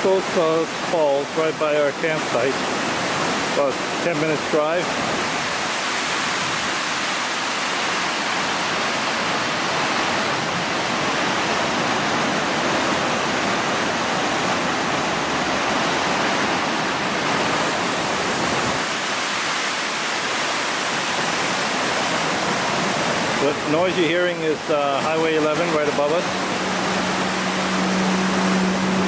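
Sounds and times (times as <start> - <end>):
waterfall roaring: 0.0 - 29.0
highway traffic drone: 24.4 - 29.0.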